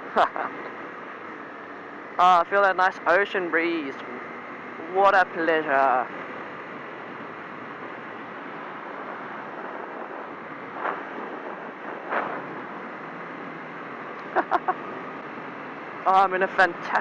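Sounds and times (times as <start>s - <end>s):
wind rushing over microphone: 7.0s - 14.2s.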